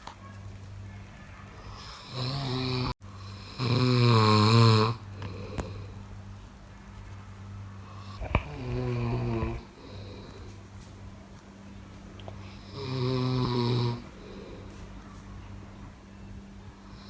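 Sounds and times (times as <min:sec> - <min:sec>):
steady low hum: 0:00.0 - 0:17.0
person snoring: 0:01.8 - 0:06.0, 0:08.0 - 0:10.6, 0:12.4 - 0:14.7.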